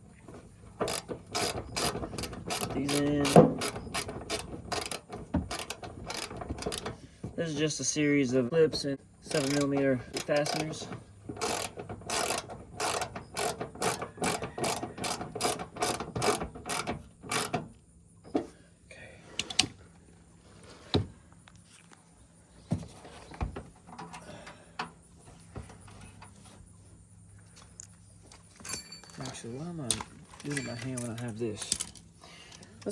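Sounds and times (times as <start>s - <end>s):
scattered clicks and knocks: 0.3s - 7.6s, 8.7s - 18.4s
hand ratchet clicking: 0.8s - 7.0s, 9.2s - 17.8s.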